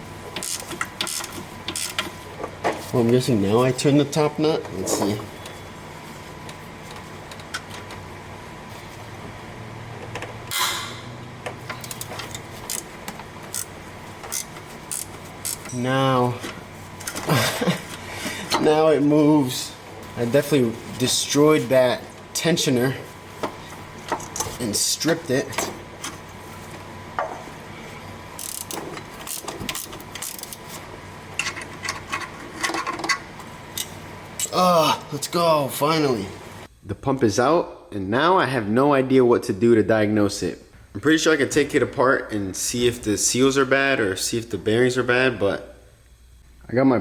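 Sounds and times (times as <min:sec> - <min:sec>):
wrench clicking and ratcheting: 0:13.5 - 0:13.7, 0:28.4 - 0:30.6.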